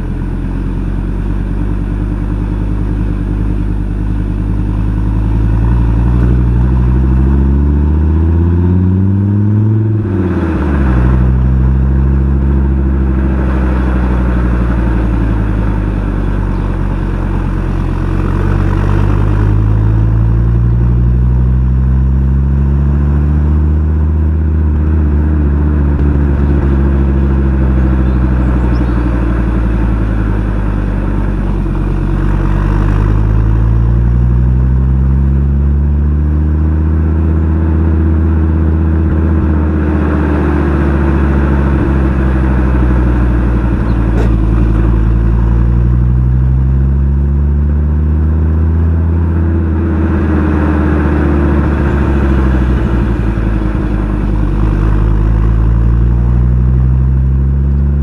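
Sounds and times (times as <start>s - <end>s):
car engine exhaust revving: 0.0s - 58.0s.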